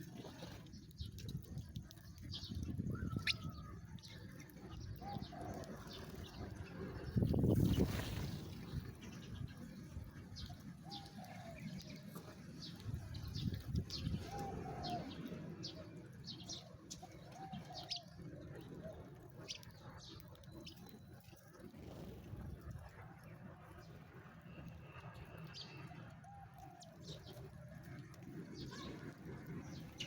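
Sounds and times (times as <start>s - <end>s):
sparrows chirping: 2.1s - 18.2s
soft arching bird calls: 2.9s - 4.2s.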